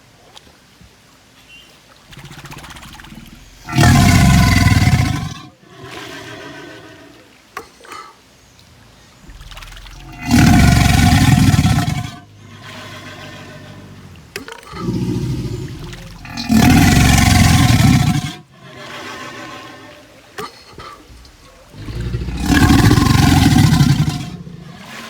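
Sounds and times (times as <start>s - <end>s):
low rumbling: 2.1s - 5.4s, 8.8s - 18.4s, 21.0s - 24.9s
crocodile bellowing: 2.1s - 7.2s, 9.0s - 25.0s.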